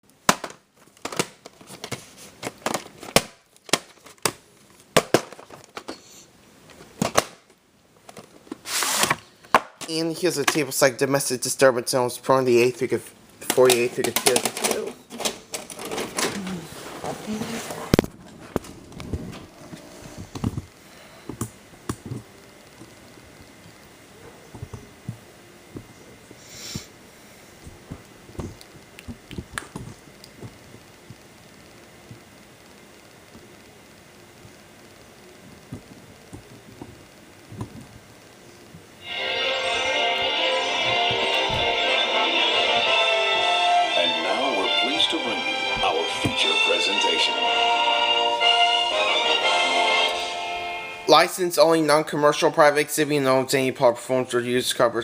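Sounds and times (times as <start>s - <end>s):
faint clicks and knocks: 35.4s - 38.0s.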